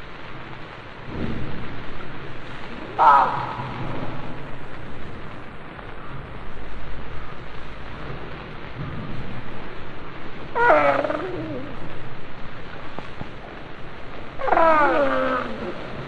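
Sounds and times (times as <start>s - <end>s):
steady rumbling background: 0.0s - 16.0s
big cat call: 2.8s - 4.3s, 10.5s - 11.9s, 14.4s - 16.0s.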